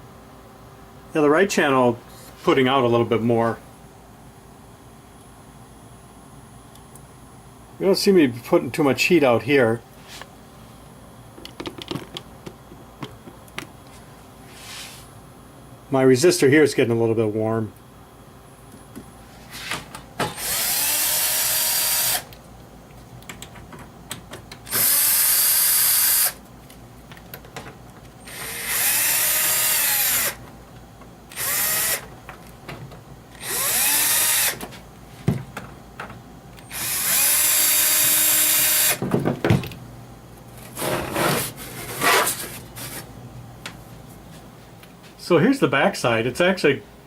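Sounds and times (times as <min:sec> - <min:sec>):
power screwdriver whining: 0:20.2 - 0:22.3, 0:24.7 - 0:26.4, 0:28.2 - 0:30.4, 0:31.3 - 0:32.1, 0:33.4 - 0:34.6, 0:36.6 - 0:39.0.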